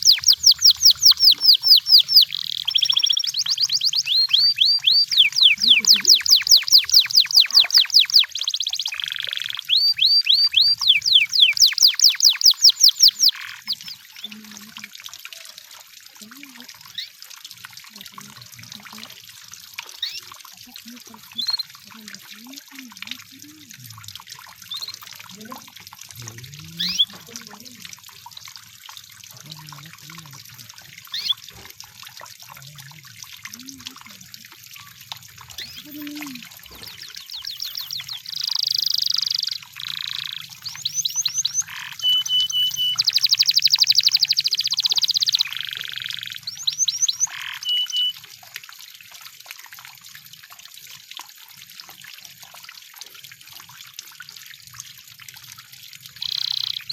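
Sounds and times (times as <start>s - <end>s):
canary singing: 0.0s - 14.4s, 19.9s - 22.1s, 24.7s - 25.5s, 26.7s - 27.4s, 31.1s - 31.4s, 35.5s - 48.2s, 56.2s - 56.9s
running water trickling: 0.0s - 56.9s.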